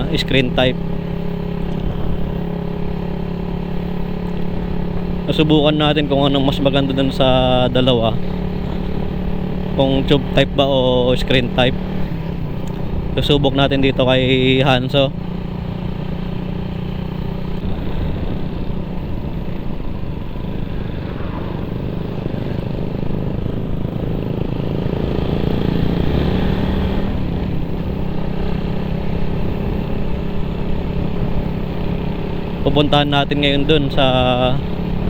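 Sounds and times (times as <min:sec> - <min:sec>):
motorcycle engine running: 0:00.0 - 0:35.0
road and wind noise: 0:00.0 - 0:35.0.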